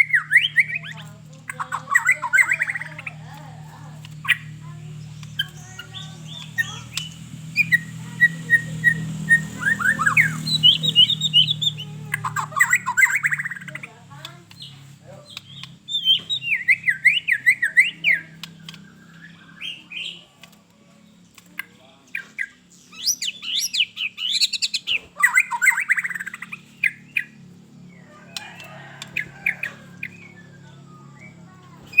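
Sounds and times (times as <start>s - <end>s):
bird singing whistled phrases: 0.0s - 3.2s, 4.0s - 13.9s, 14.5s - 20.3s, 22.1s - 27.4s, 29.0s - 32.0s
bird sharp clicks: 4.0s - 7.9s, 10.0s - 19.1s.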